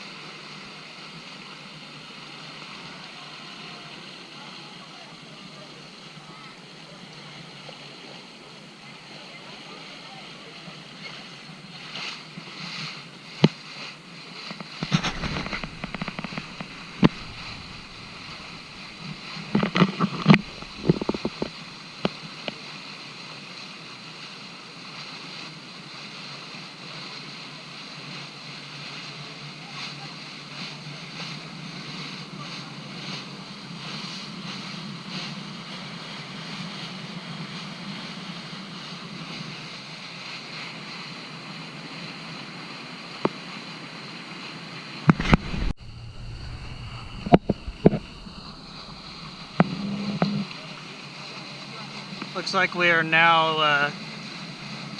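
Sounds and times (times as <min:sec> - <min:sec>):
wind and water rushing: 0:00.0 - 0:54.9
knocks and thumps on boat: 0:14.4 - 0:22.6, 0:45.0 - 0:50.5.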